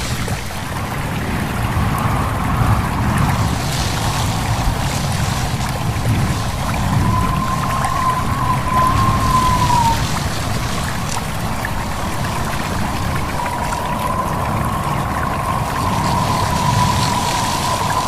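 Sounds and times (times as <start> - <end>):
stream running: 0.0 - 18.0
whistling wind: 0.0 - 18.0.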